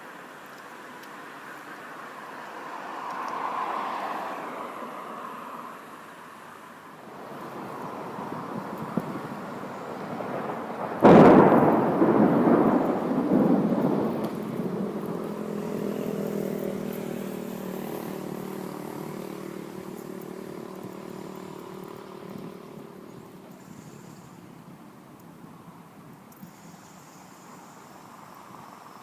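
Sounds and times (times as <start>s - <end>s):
low thunder rumbling: 7.2s - 23.4s
thunderclap crack: 7.5s - 17.1s.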